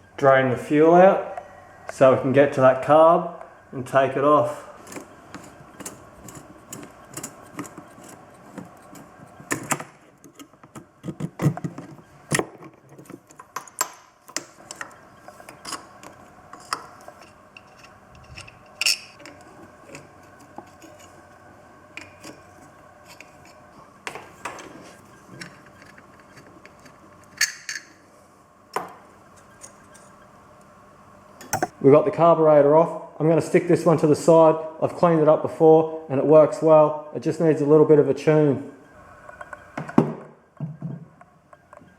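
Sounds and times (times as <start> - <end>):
hand tools clicking and clinking: 4.9 - 11.9, 12.9 - 21.2.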